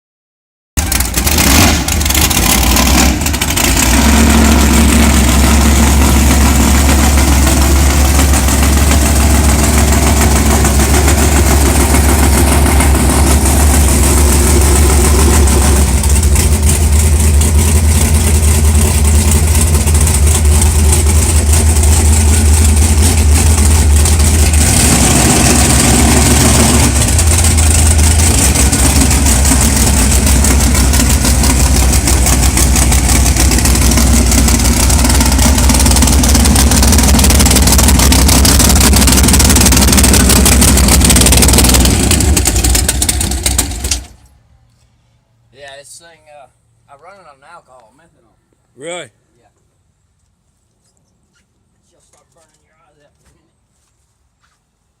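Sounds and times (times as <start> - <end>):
truck engine idling loudly: 0.8 - 44.1.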